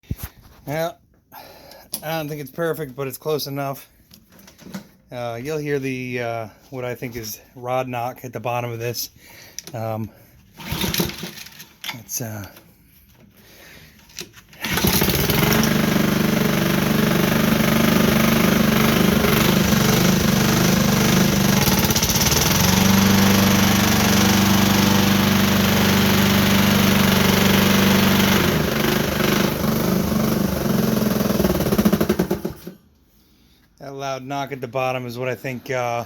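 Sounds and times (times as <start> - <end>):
lawn mower engine knocking: 14.6 - 32.7.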